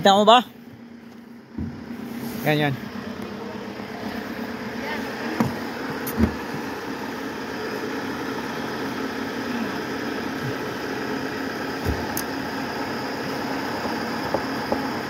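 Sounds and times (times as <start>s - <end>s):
diesel engine idling: 0.0s - 15.0s
low thump: 1.5s - 1.9s.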